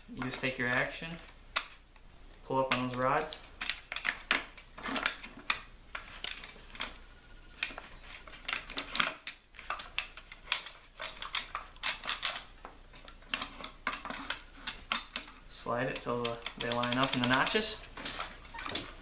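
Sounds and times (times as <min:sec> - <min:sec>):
metallic clicks of shotgun parts: 0:00.2 - 0:02.1, 0:08.5 - 0:17.7.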